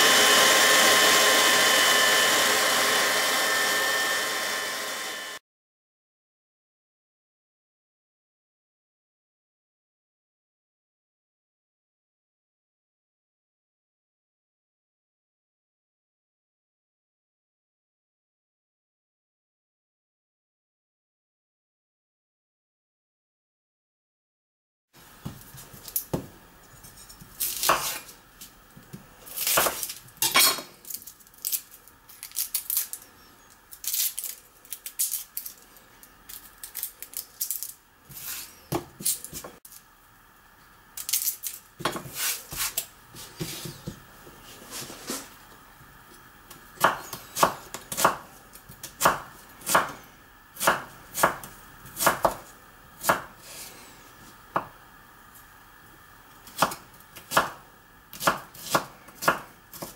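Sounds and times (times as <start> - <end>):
knife chopping on a board: 27.6 - 28.1, 28.9 - 29.8, 41.8 - 42.8, 46.8 - 50.0, 50.6 - 53.4, 56.5 - 59.9.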